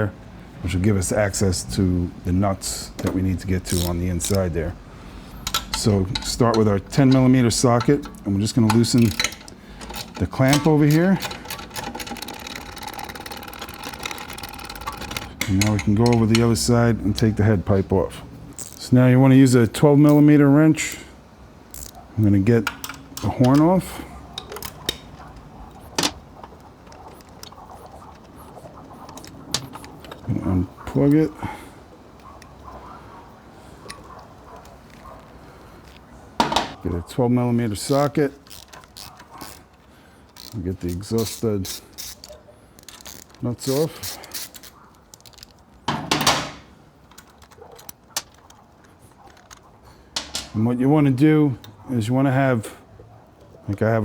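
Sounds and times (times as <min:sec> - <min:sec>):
wrench clicking on bolt: 0:03.0 - 0:04.5, 0:05.3 - 0:17.3, 0:21.7 - 0:22.0, 0:22.6 - 0:23.7, 0:24.3 - 0:28.4, 0:37.9 - 0:46.3
metal tool ticking on metal: 0:05.4 - 0:16.7.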